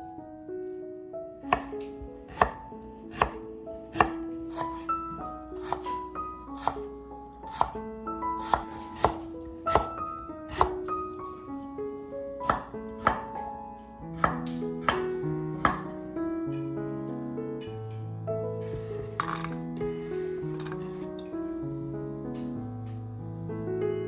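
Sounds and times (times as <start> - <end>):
slow instrumental music: 0.0 - 24.0
knife chopping on cutting board: 1.5 - 4.8, 5.6 - 6.0, 6.6 - 6.9, 7.5 - 7.8, 8.4 - 10.8, 12.4 - 13.3, 14.2 - 15.9.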